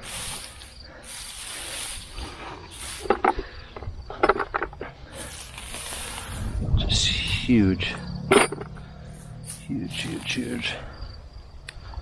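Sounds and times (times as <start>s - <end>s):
dry hay rustling and crunching: 5.2s - 6.6s.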